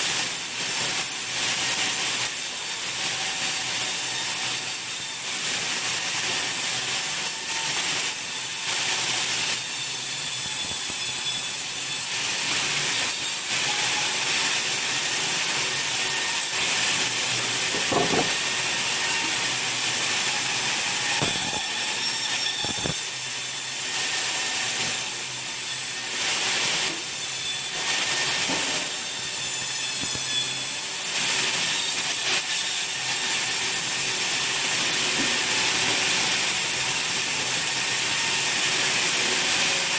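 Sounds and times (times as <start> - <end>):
saw cutting through timber: 0.0 - 39.9
knocks: 17.8 - 18.4.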